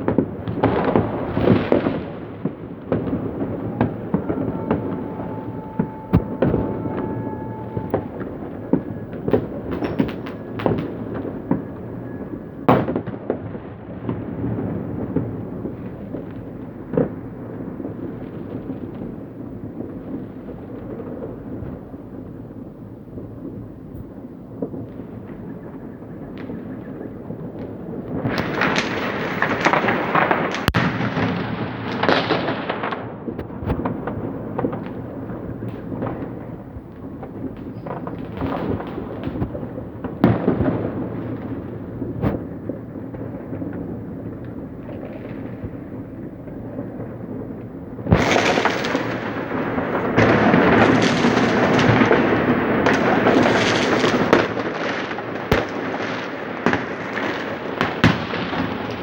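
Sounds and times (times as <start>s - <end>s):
sharp firework bangs: 0.0s - 13.5s, 28.2s - 36.5s, 48.0s - 59.0s
fireworks bursting and crackling: 0.0s - 59.0s.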